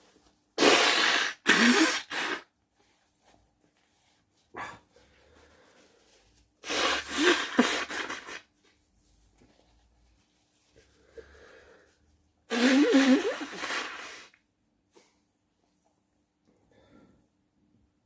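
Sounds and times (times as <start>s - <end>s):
faint breath in: 10.9s - 12.0s.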